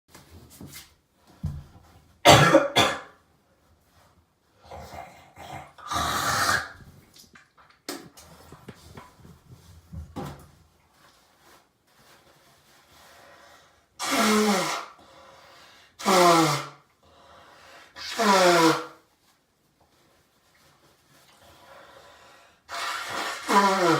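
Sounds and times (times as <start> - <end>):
man coughing loudly: 2.2 - 3.1
man clearing his throat: 2.3 - 3.1.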